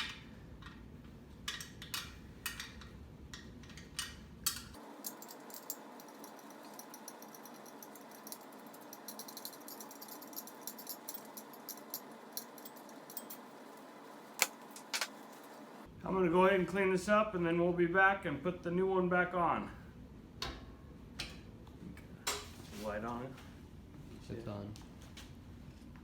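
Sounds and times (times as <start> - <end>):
low background hum: 0.0 - 26.0
metallic clinks of tools: 4.5 - 15.1.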